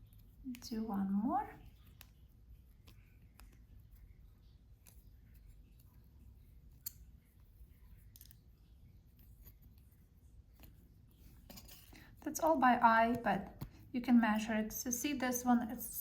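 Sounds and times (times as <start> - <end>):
jewelry wire and hand tools clicking: 6.7 - 7.4, 10.6 - 12.2.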